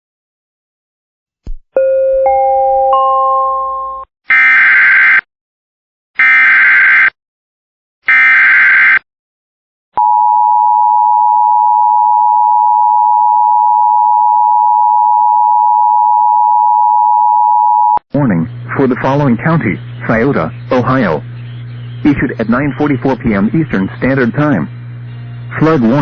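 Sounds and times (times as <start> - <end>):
chime: 1.8 - 4.0
steady attention tone: 10.0 - 26.0
digital data bursts: 18.2 - 26.0.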